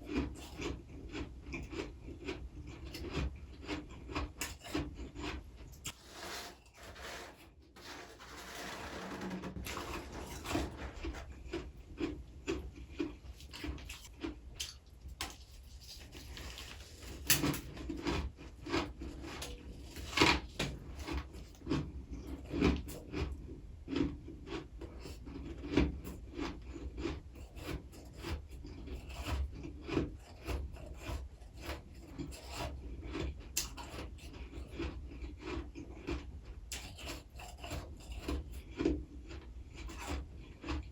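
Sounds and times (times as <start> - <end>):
frost being chewed crunching: 0.0 - 6.0, 10.1 - 30.6, 32.0 - 40.9.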